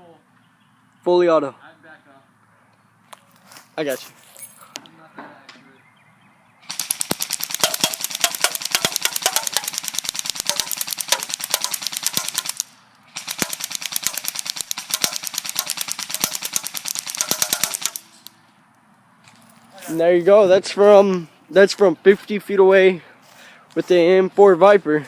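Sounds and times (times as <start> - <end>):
airsoft rifle firing full auto: 6.7 - 18.3.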